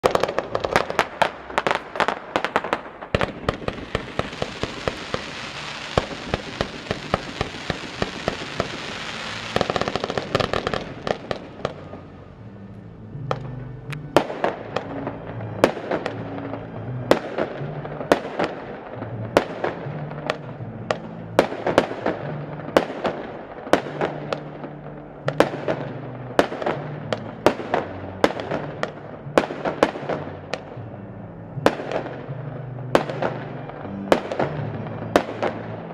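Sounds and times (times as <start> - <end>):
firework bangs: 0.0 - 12.1, 14.2 - 30.7
hissing crackle of fireworks: 0.0 - 12.2
background music: 0.0 - 35.9.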